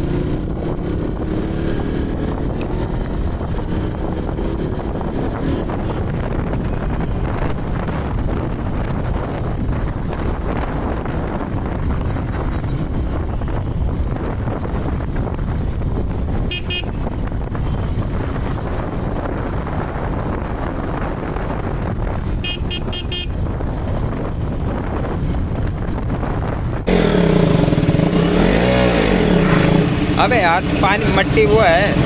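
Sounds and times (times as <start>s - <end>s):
motorcycle engine: 0.0s - 32.0s
wind rush: 0.0s - 32.0s
horn toots: 16.4s - 17.0s, 22.4s - 23.4s.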